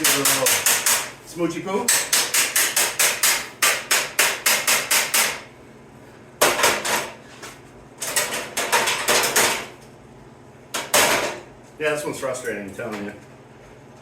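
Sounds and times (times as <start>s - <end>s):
hammer tapping sheet metal: 0.0s - 1.2s, 1.8s - 5.5s.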